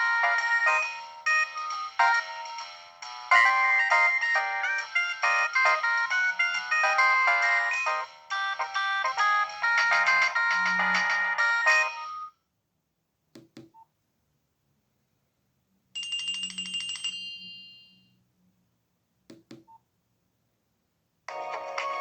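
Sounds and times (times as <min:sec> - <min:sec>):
polyphonic ringtone melody: 0:00.0 - 0:12.3.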